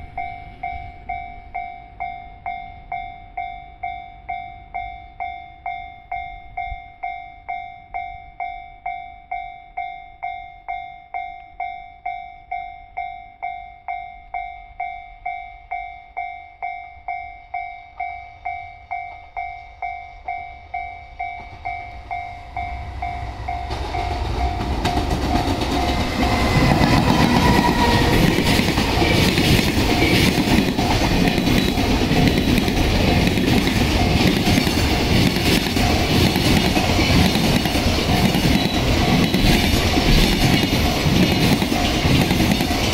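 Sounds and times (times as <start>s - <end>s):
level-crossing warning bell: 0.0s - 42.9s
train wheels clattering on rails: 21.1s - 42.9s.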